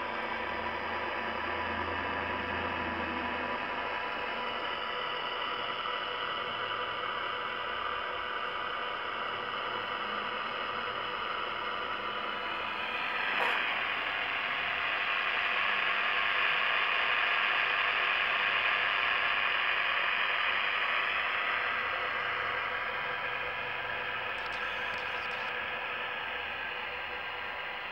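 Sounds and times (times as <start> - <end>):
radio speaker buzzing with hiss: 8.9 - 27.9
radio click: 24.4 - 25.6.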